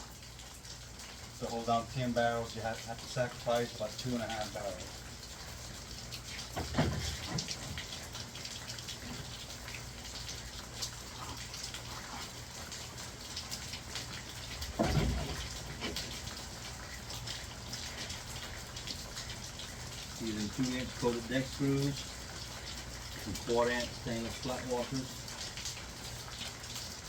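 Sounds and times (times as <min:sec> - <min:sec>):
rain falling: 0:00.0 - 0:27.0
dull thumps: 0:06.5 - 0:07.9, 0:14.7 - 0:16.3.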